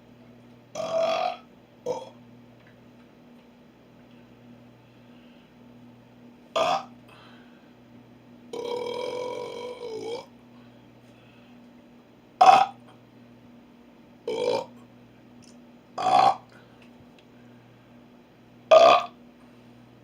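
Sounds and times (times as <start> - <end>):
person burping: 0.7 - 2.2, 6.6 - 6.9, 8.5 - 10.3, 12.4 - 12.9, 14.3 - 14.7, 16.0 - 16.5, 18.7 - 19.2.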